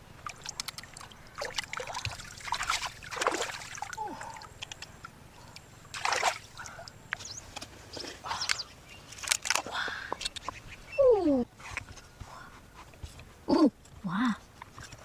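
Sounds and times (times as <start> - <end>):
water splashing and trickling: 0.0 - 7.1.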